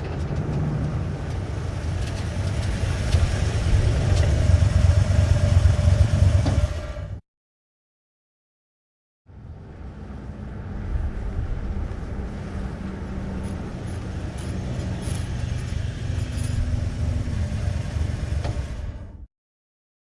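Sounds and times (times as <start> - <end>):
old truck engine rumbling: 11.1 - 19.2.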